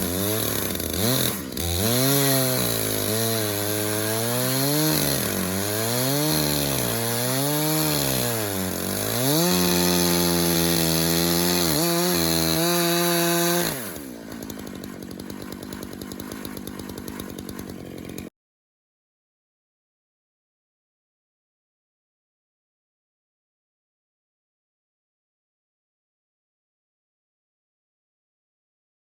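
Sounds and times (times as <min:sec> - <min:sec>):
chainsaw ripping a log: 0:00.0 - 0:18.3.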